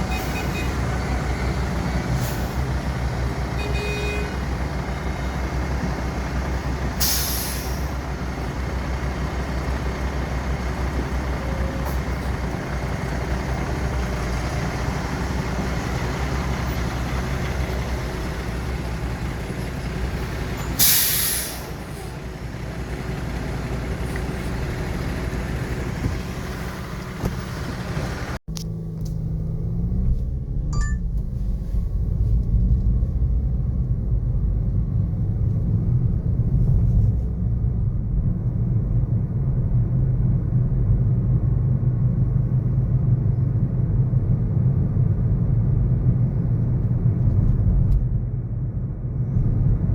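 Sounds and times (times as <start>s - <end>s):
city street traffic rumble: 0.0s - 49.9s
air brake hiss: 7.0s - 8.0s, 20.6s - 22.1s.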